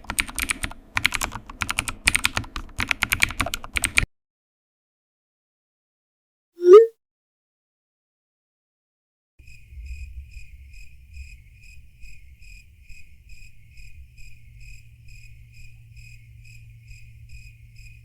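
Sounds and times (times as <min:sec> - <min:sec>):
cricket chirping: 0:09.4 - 0:18.0.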